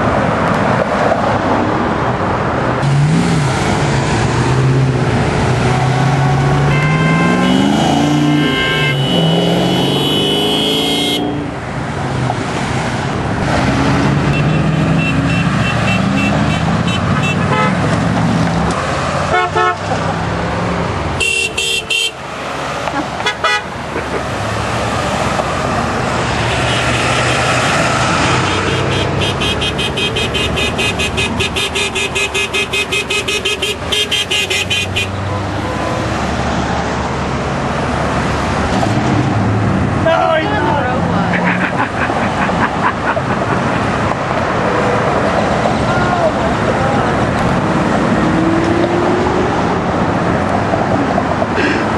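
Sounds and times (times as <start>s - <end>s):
traffic passing: 0.0s - 51.9s
car horns honking: 5.8s - 11.6s, 14.2s - 17.9s, 19.3s - 20.0s, 21.2s - 22.3s, 23.2s - 23.8s, 26.4s - 36.2s.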